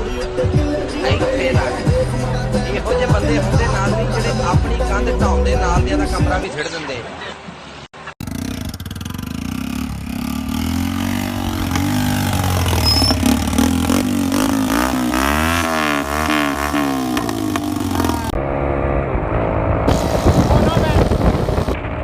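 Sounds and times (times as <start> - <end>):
tractor diesel engine revving: 8.2 - 18.4.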